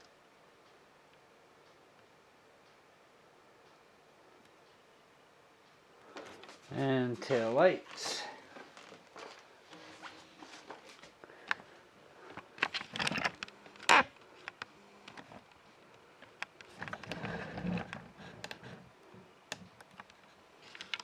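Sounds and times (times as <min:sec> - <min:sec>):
handling clicks and rustling: 0:12.3 - 0:18.8.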